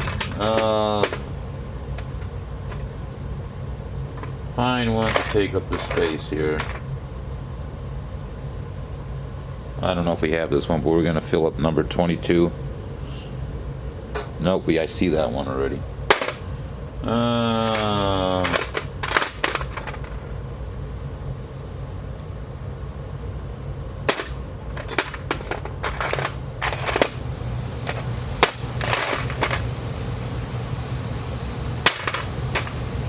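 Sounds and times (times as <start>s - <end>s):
small metal parts clicking: 0.0s - 1.3s, 17.6s - 20.3s, 24.0s - 27.2s, 27.8s - 29.6s, 31.9s - 32.8s
steady low hum: 0.0s - 33.0s.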